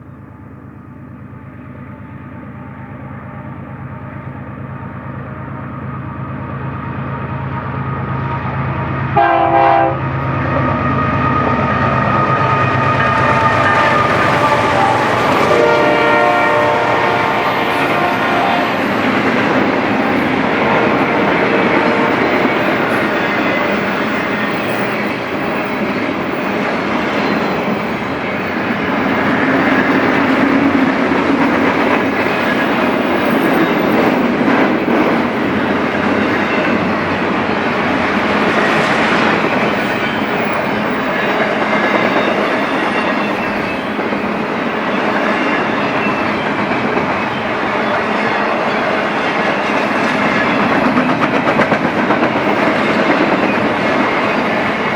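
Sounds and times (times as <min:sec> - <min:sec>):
freight train wheels rumbling: 0:00.0 - 0:54.9
train cars clickety-clack: 0:06.2 - 0:54.9
locomotive horn blast: 0:09.1 - 0:19.6, 0:20.6 - 0:23.1.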